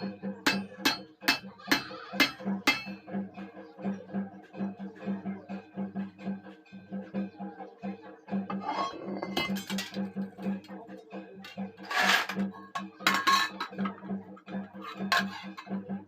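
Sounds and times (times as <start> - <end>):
background music with beat: 0.0 - 16.0
scrap iron clanking: 8.5 - 10.2, 11.4 - 14.0, 14.8 - 15.8.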